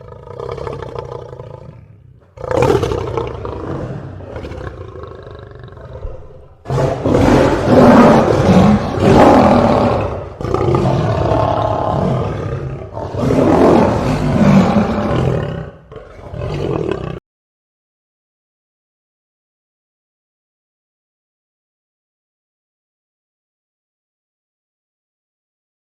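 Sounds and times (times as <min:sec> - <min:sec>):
lion roaring: 0:00.0 - 0:17.2.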